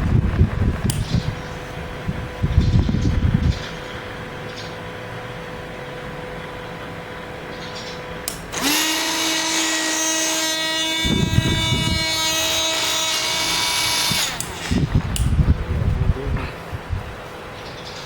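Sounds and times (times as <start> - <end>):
electric drill whining: 8.4 - 15.0
rough grinding noise: 8.5 - 15.3.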